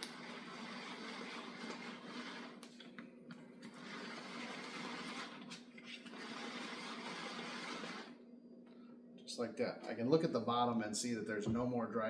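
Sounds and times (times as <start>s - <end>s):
mixer whirring and churning batter: 0.0s - 8.3s
faint steady hum: 0.0s - 12.0s.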